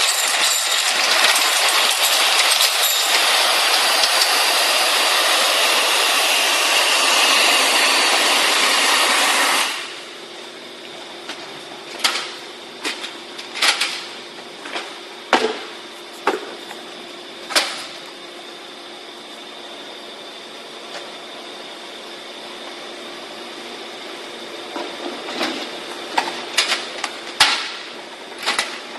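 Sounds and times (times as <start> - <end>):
steady hum: 0.0 - 28.9
vacuum cleaner rushing hiss: 1.0 - 10.2.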